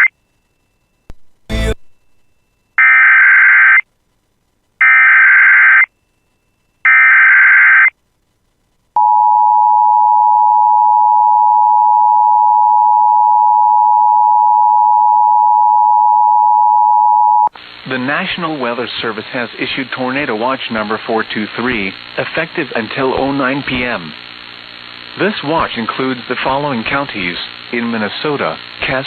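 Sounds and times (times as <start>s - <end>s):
steady loud attention tone: 1.1s - 2.6s.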